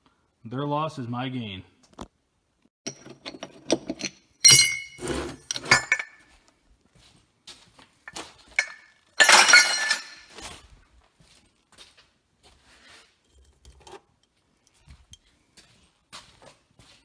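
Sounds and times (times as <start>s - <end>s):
scrap metal clattering: 2.9s - 6.2s, 8.1s - 10.6s.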